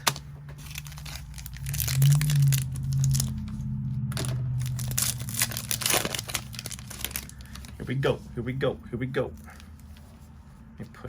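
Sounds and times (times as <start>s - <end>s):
cardboard tearing: 0.0s - 3.4s, 4.2s - 7.8s
plastic wrapping crinkling: 0.0s - 8.2s
low steady hum: 0.0s - 11.0s.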